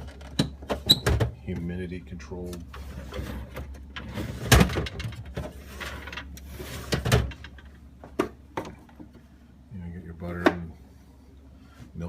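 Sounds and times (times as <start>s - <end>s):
plastic drawer sliding: 2.7s - 7.4s.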